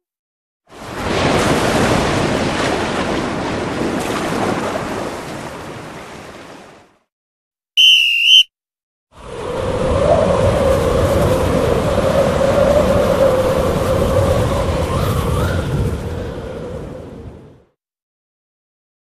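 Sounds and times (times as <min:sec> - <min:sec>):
short warbling whistle tone: 0:07.8 - 0:08.5.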